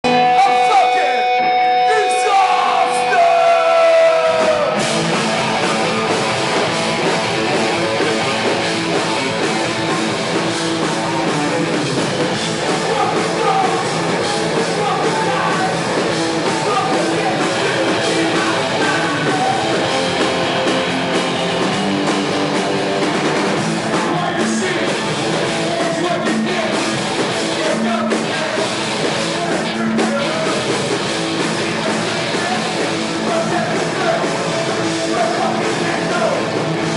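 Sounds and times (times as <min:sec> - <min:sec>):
sliding electric guitar notes: 0:00.0 - 0:12.3
heavy rock band playing: 0:00.0 - 0:36.9.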